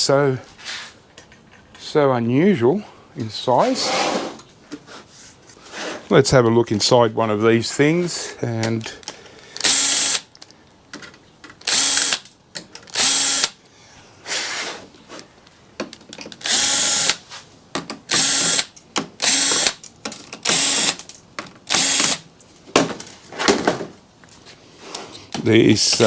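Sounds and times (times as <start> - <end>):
power drill backing out screws: 18.1 - 21.1.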